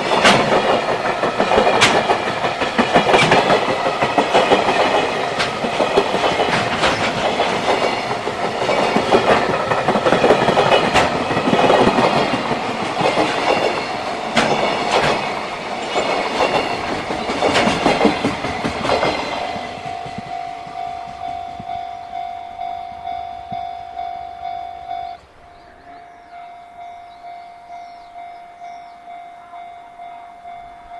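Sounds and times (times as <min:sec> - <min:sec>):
train wheels clacking over rail joints: 0:00.0 - 0:21.8
steady tone: 0:18.2 - 0:25.4.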